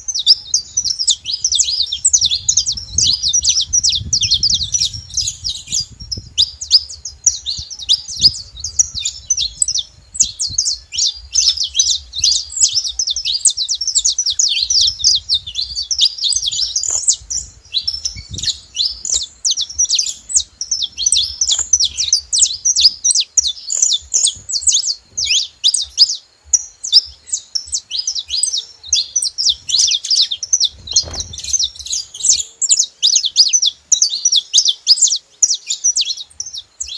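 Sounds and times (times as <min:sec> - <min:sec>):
finches chirping: 0:00.0 - 0:36.9.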